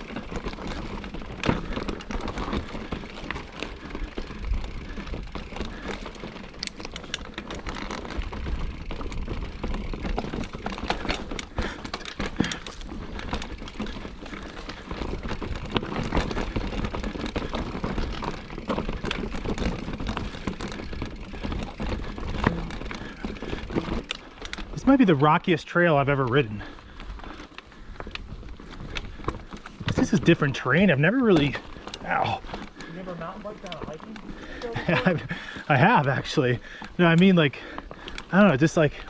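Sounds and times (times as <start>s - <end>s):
bike clattering and knocking: 0.0s - 24.8s, 31.2s - 36.0s
bike rumbling over rocks: 0.0s - 25.3s, 25.9s - 39.0s.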